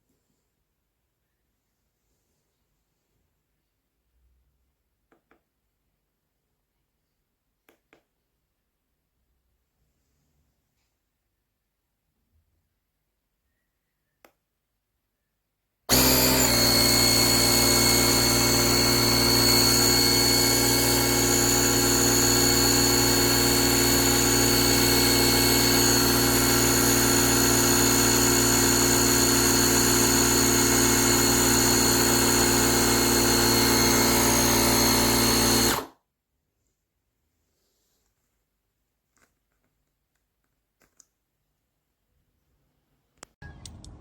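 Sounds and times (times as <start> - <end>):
electric air compressor running: 15.9 - 35.9.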